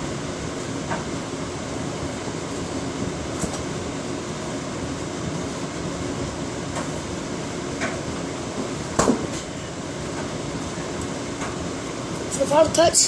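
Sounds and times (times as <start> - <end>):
fan-like room hum: 0.0 - 13.0.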